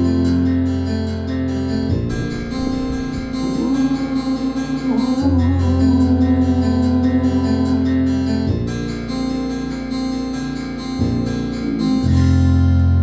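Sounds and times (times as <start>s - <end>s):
band playing with bass and guitar: 0.0s - 13.0s
deep bass note: 1.9s - 9.3s, 10.8s - 13.0s.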